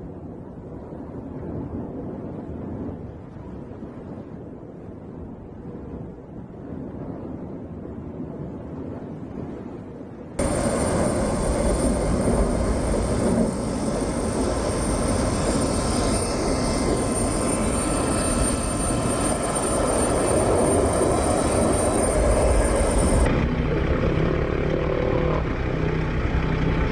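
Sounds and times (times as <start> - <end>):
faint wind noise: 0.0 - 26.9
aircraft engines droning: 10.4 - 26.9.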